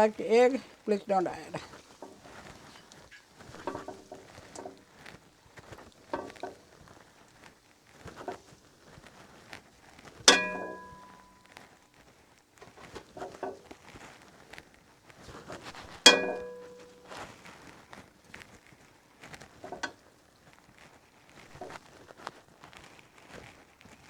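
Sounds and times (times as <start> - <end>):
metal utensil scraping in pan: 1.2 - 4.9, 10.2 - 11.6, 15.7 - 17.4
sharp ringing clanks: 10.3 - 11.5, 16.1 - 17.2.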